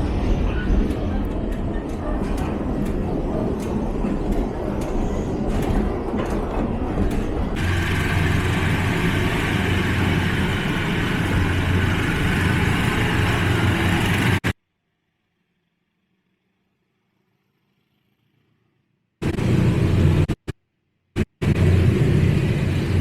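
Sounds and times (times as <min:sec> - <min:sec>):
train rumbling on rails: 0:00.0 - 0:14.6, 0:19.2 - 0:20.4, 0:21.2 - 0:23.0.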